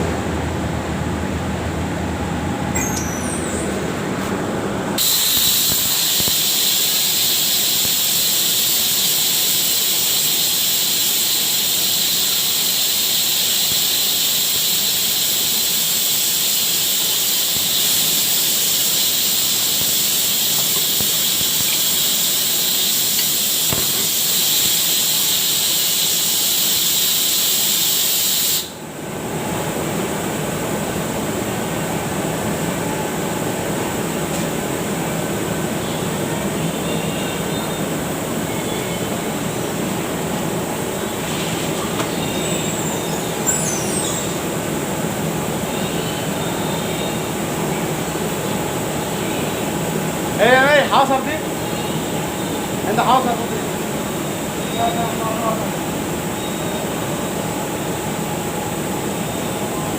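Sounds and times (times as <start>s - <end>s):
compressed air hissing: 5.0s - 28.8s.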